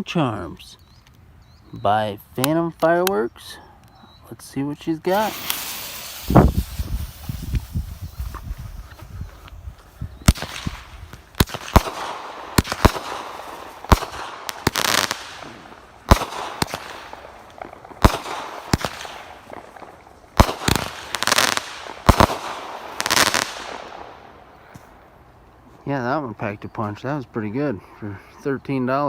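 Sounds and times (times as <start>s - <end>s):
hissing firework crackle: 5.0s - 25.0s
firework shots banging: 5.1s - 25.0s.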